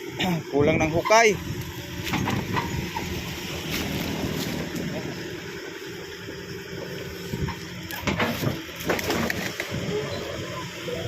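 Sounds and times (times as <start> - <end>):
backhoe engine running under load: 0.0 - 11.0
wood and branches cracking: 7.8 - 9.8.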